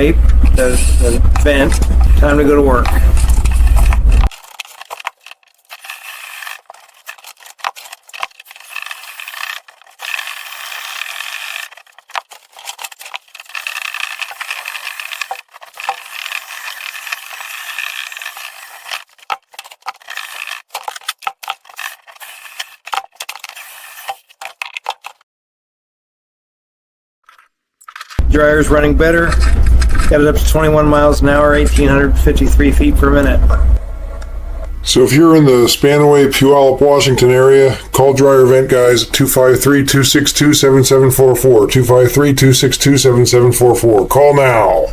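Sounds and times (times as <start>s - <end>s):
vent duct rattling and scraping: 0.0s - 10.3s, 28.2s - 32.9s.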